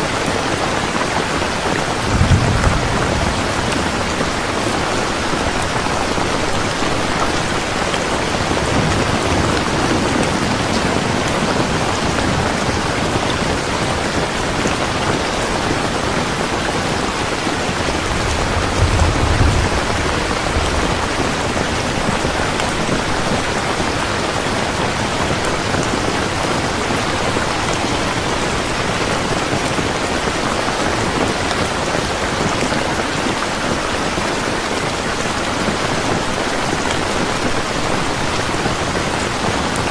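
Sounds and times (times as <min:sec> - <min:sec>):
heavy rain pouring: 0:00.0 - 0:39.9
thunder rumbling: 0:01.2 - 0:32.5.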